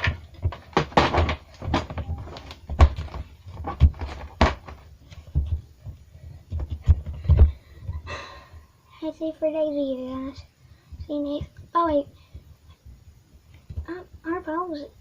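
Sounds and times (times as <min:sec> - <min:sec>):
irregular knocks and thumps: 0:00.0 - 0:08.1.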